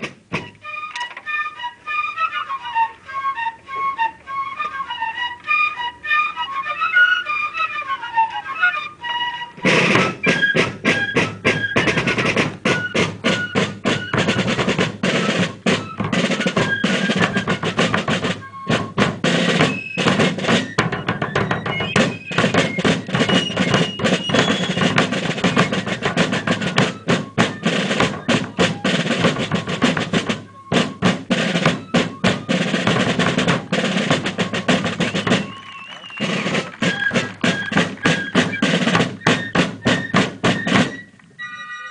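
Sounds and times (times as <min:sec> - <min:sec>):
snare drum rolls: 0:00.0 - 0:00.7, 0:09.6 - 0:41.1.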